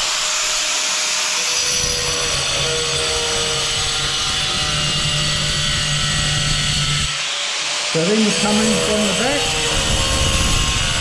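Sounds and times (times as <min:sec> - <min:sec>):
angle grinder cutting tile: 0:00.0 - 0:11.0.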